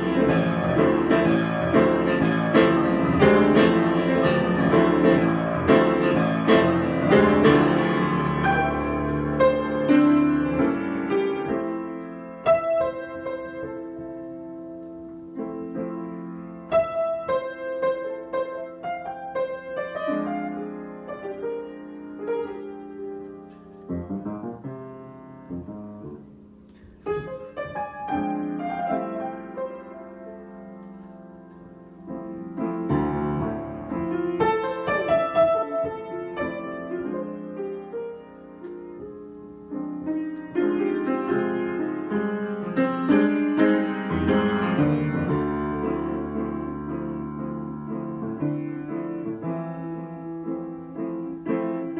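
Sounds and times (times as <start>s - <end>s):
solo piano improvising: 0.0s - 51.9s.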